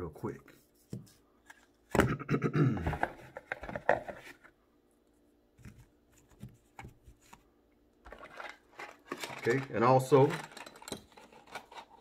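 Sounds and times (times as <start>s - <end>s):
packaging rustling and scraping: 8.0s - 12.0s.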